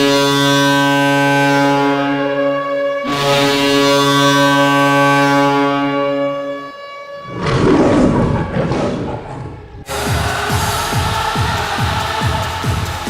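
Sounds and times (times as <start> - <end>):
goal horn chord: 0.0 - 7.3.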